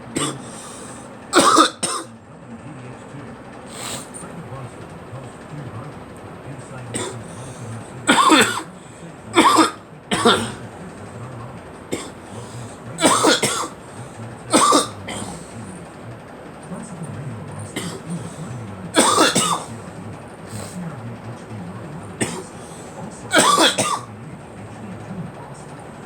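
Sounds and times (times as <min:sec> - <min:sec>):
person coughing: 0:00.1 - 0:02.1, 0:03.7 - 0:04.2, 0:06.9 - 0:10.7, 0:12.0 - 0:15.7, 0:17.8 - 0:19.8, 0:22.2 - 0:24.1.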